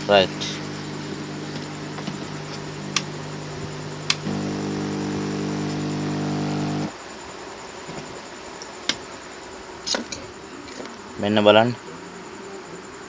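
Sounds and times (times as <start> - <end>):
electric hum of equipment: 0.0 - 6.9
switch clicks: 2.5 - 3.2, 4.0 - 4.8.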